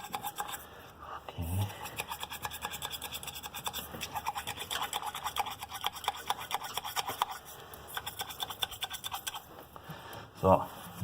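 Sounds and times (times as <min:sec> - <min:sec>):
brush scrubbing: 0:00.0 - 0:00.7, 0:01.7 - 0:09.7.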